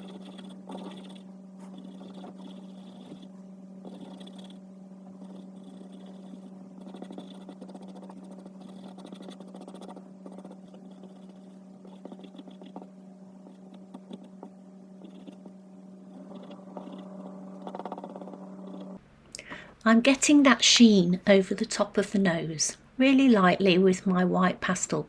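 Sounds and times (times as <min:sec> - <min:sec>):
pencil scratching on paper: 0:00.0 - 0:19.0
low electrical hum: 0:00.0 - 0:25.0.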